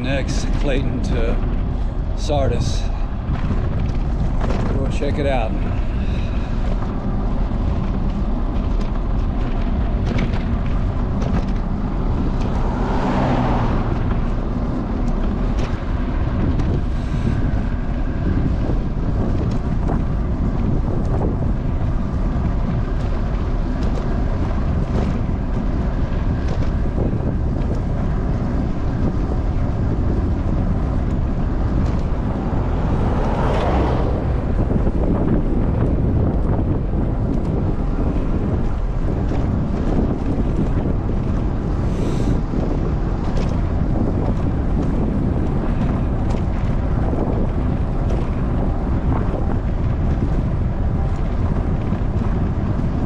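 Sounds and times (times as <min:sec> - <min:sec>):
wind buffeting microphone: 0:00.0 - 0:53.0.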